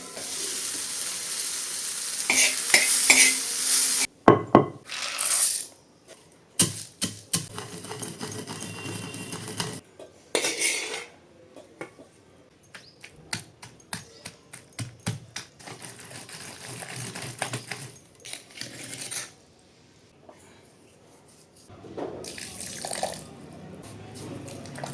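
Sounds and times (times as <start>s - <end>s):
utensils scraping dishes: 2.3s - 3.4s, 7.5s - 9.8s, 10.4s - 11.1s
utensils clicking on dishes: 2.3s - 3.5s, 7.4s - 9.8s.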